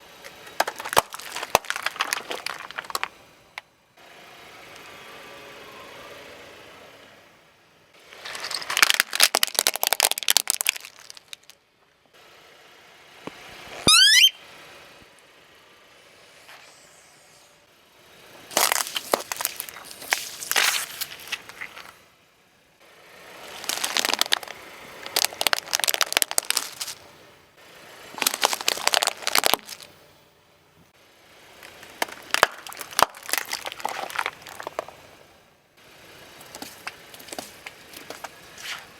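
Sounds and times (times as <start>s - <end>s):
things cracking under car tyre: 0.2s - 3.7s, 8.1s - 11.6s, 18.5s - 22.0s, 23.4s - 27.1s, 28.1s - 29.9s, 31.6s - 35.2s, 36.2s - 38.9s.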